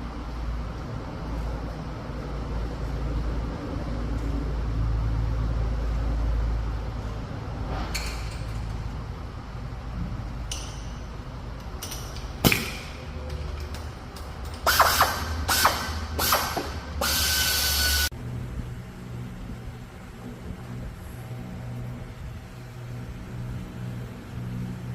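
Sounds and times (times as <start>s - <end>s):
tool hissing whine: 14.7s - 18.1s.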